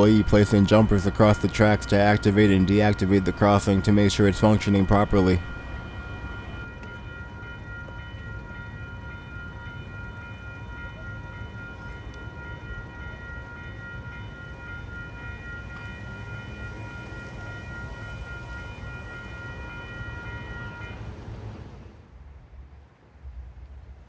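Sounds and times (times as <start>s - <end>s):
high steady tones: 0.0s - 6.6s
train low rumble: 0.0s - 24.0s.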